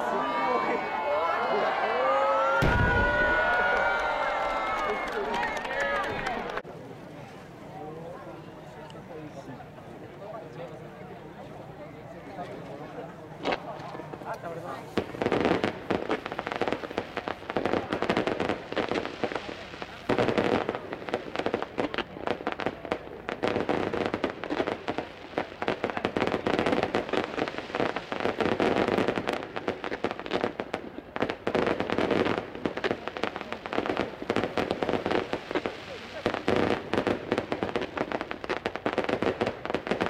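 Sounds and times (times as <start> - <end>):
fireworks bangs and crackling: 2.6 - 6.7, 12.9 - 40.0.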